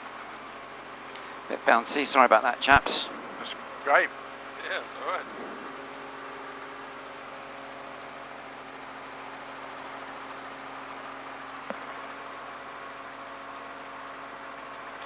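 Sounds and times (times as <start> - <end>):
helicopter engine and rotors drone: 0.0 - 15.0
steady tones: 1.7 - 8.9.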